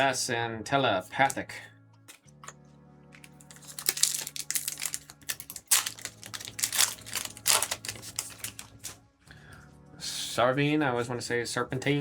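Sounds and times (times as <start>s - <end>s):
foil wrapper crinkling and tearing: 3.2s - 9.0s.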